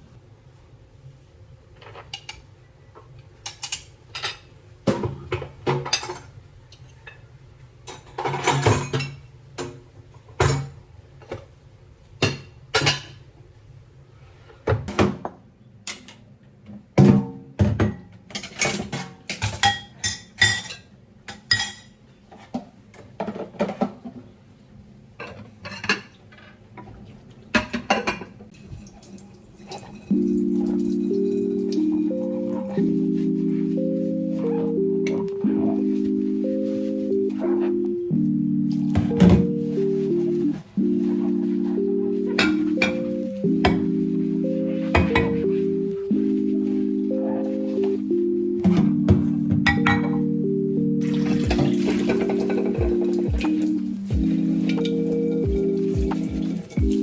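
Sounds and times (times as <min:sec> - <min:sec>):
dishes and cutlery clattering: 0:03.4 - 0:07.3, 0:07.9 - 0:09.8, 0:10.4 - 0:11.4, 0:12.2 - 0:13.2, 0:17.1 - 0:22.5, 0:27.6 - 0:32.0, 0:49.6 - 0:50.3, 0:51.4 - 0:53.8.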